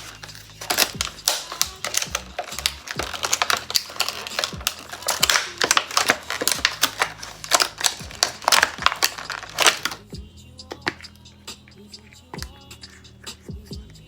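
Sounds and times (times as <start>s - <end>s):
plastic packaging crackling: 0.0s - 10.1s.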